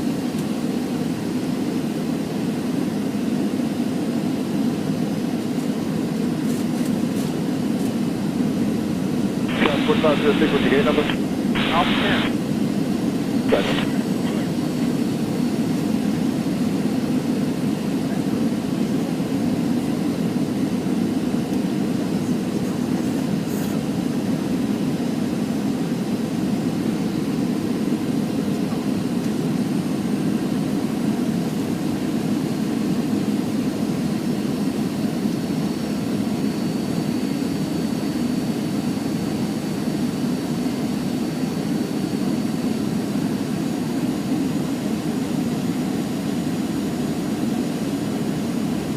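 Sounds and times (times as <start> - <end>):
jet engine and airflow rush: 0.1 - 48.9
faint high whine: 9.5 - 12.4, 13.4 - 14.2.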